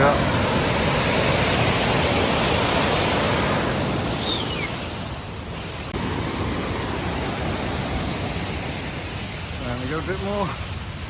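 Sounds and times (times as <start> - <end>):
flowing water rushing: 0.0 - 11.0
high falling whistle: 4.2 - 4.9.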